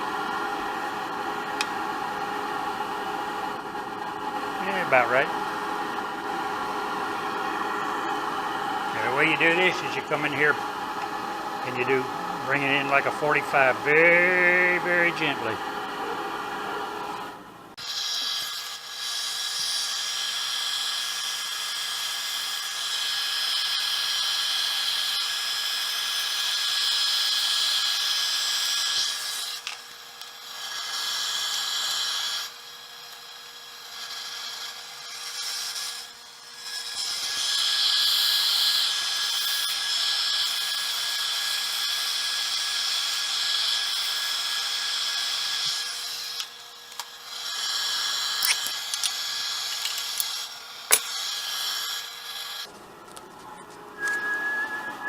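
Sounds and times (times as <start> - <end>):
lathe motor hum: 0.0 - 17.8
lathe tool cutting wood hiss: 4.4 - 16.2, 17.8 - 52.7.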